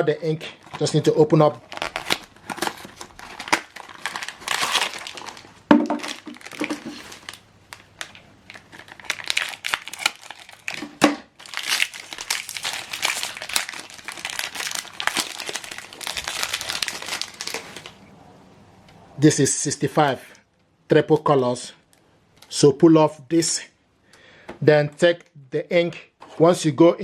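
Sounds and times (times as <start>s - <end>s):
packaging crinkling: 1.6s - 18.1s.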